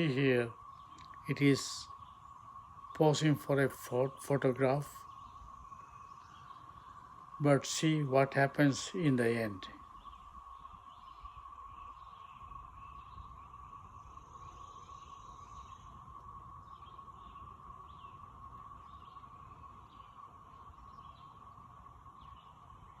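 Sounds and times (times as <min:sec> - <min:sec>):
steady hum: 0:00.0 - 0:10.8
faint bird chirps: 0:00.0 - 0:23.0
low wind rumble: 0:00.0 - 0:23.0.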